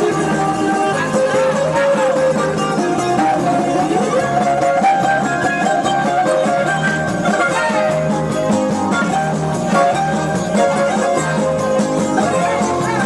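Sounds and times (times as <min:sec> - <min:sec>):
dance music with plucked strings: 0:05.4 - 0:13.0
bass beat: 0:08.0 - 0:12.8.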